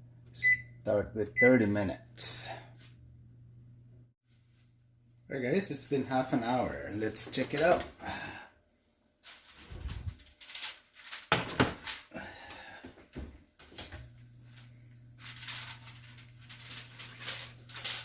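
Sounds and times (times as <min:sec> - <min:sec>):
aluminium foil crinkling: 0:09.2 - 0:12.7, 0:14.4 - 0:18.0.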